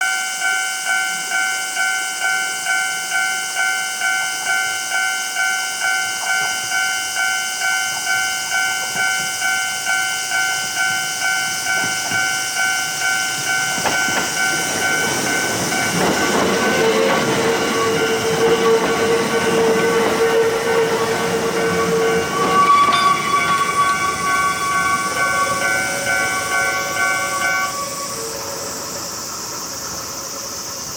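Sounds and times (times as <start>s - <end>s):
railroad crossing bell ringing: 0.0s - 30.9s
steady train whine: 0.0s - 30.9s
train wheels rumbling on rails: 0.9s - 30.9s.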